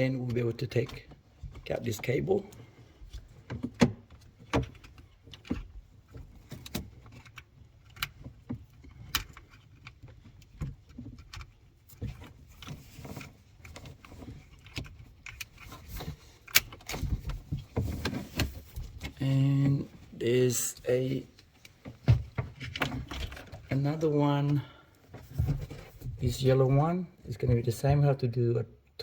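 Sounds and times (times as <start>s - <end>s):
clicks and rattles inside car door: 3.0s - 19.2s.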